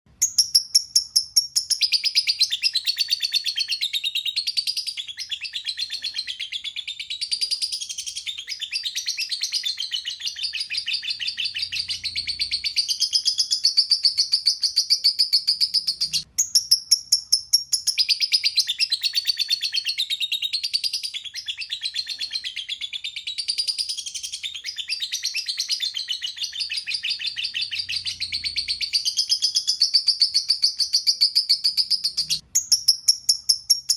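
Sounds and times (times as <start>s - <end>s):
lovebird chattering song: 0.1s - 33.9s.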